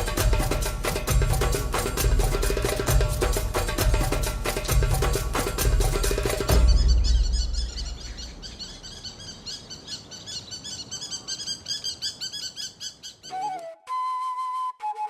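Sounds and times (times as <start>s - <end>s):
percussive music: 0.0s - 8.5s
birds chirping: 4.4s - 13.6s
flute tune: 13.3s - 15.0s.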